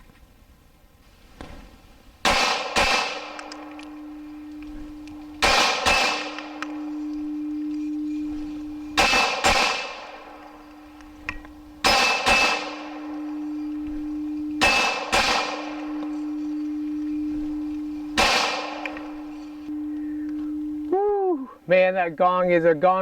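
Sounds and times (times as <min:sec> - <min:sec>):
pistol shots: 0:02.2 - 0:16.8, 0:18.2 - 0:19.5
steel targets ringing: 0:02.2 - 0:23.0
steel gong low ring: 0:02.3 - 0:22.2.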